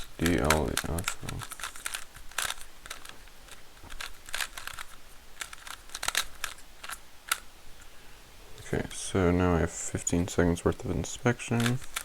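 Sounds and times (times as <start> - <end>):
speed cube clicking and clacking: 0.0 - 7.5, 11.3 - 12.0.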